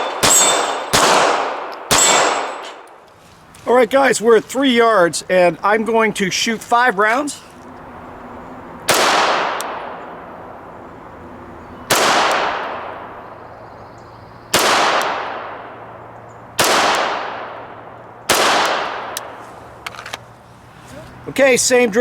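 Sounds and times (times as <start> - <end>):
pistol shots echoing: 0.0 - 3.0, 8.9 - 10.0, 11.9 - 13.1, 14.5 - 15.9, 16.6 - 19.2.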